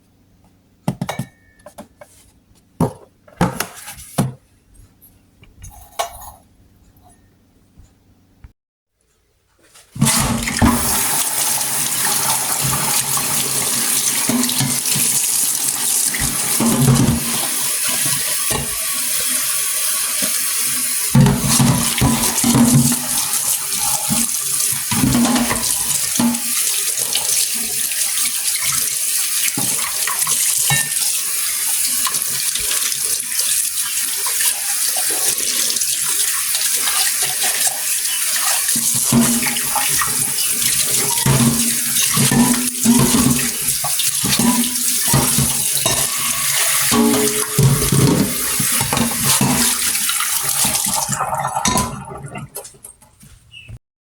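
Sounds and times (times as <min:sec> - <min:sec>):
faucet water running into sink: 0:10.0 - 0:52.8.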